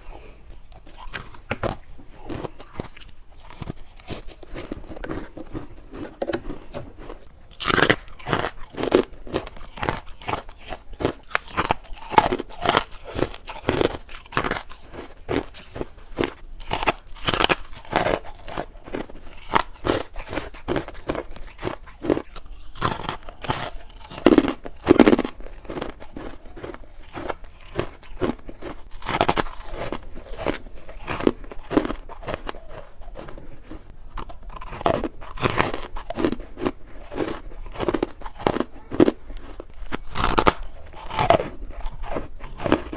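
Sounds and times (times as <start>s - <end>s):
person crunching frost: 0.0s - 42.9s.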